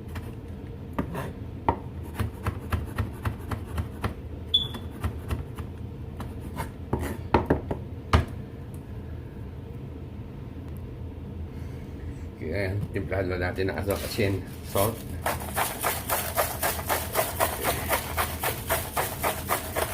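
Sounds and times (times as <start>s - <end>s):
knife chopping on cutting board: 1.0s - 7.8s, 15.2s - 19.9s.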